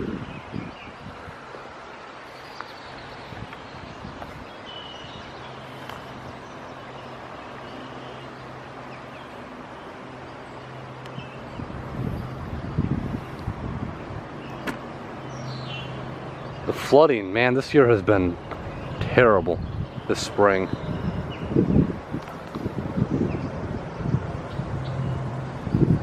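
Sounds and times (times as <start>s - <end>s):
outdoor background noise: 0.0s - 26.0s.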